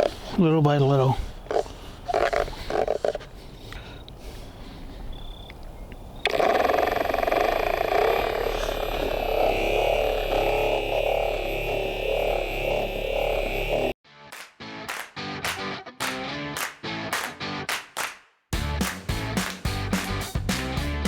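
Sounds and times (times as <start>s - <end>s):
polishing buffer motor hum: 6.3s - 14.0s
guitar music: 13.2s - 17.7s.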